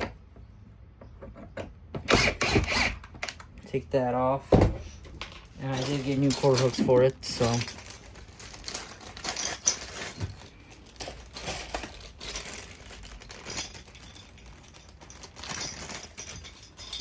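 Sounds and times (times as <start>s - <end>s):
plastic packaging crinkling: 5.6s - 17.0s.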